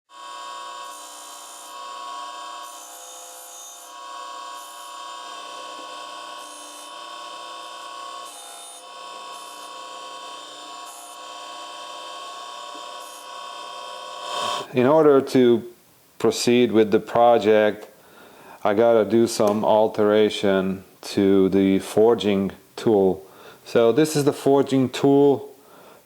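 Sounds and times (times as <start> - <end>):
grinding wheel whine: 0.2 - 14.7
grinding hiss: 14.2 - 14.8.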